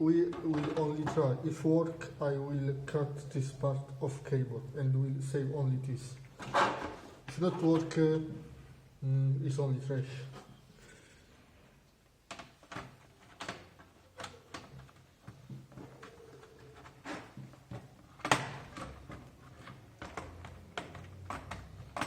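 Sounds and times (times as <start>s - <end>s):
plastic keyboard parts clicking: 12.3s - 22.0s.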